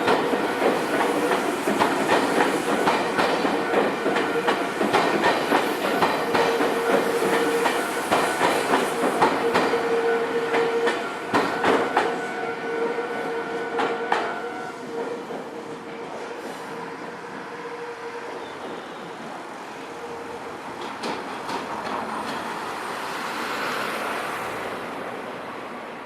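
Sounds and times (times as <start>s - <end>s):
train wheels clacking over joints: 0.0s - 12.3s, 20.6s - 22.8s
train hum: 0.0s - 26.0s.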